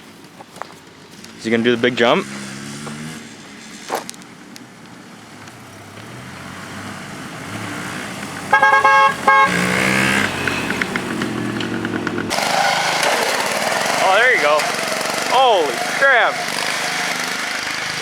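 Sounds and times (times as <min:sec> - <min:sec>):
lawn mower engine running: 0:07.1 - 0:18.0
vehicle horn blasts: 0:08.5 - 0:10.8.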